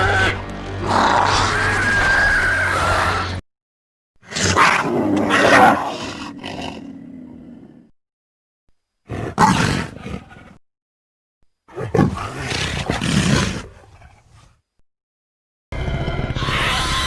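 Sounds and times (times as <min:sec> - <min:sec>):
creature roaring calls: 0:00.0 - 0:03.4, 0:04.2 - 0:07.9.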